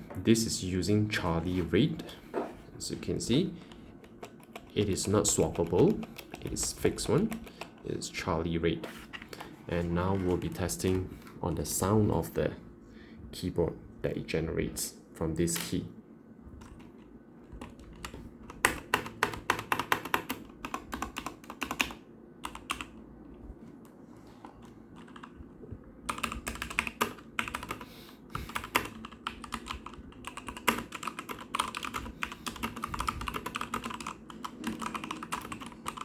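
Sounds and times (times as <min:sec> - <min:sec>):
mechanical keyboard typing: 0:03.6 - 0:07.8, 0:17.6 - 0:23.0, 0:24.6 - 0:27.8, 0:28.5 - 0:36.0.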